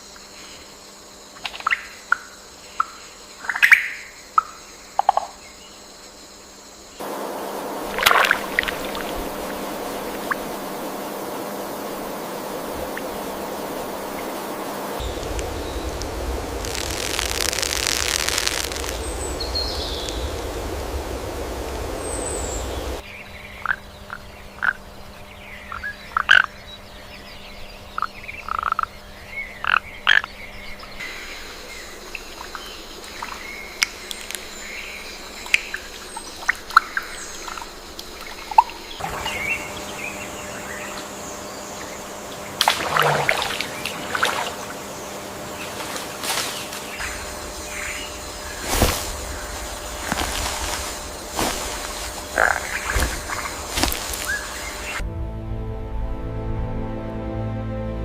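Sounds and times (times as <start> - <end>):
steady rushing noise: 7.0 - 23.0, 39.0 - 55.0.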